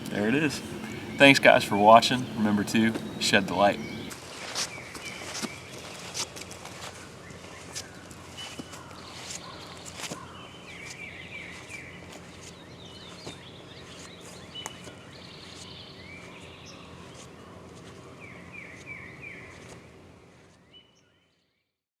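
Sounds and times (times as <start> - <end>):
bird high trill: 0.0 - 4.1.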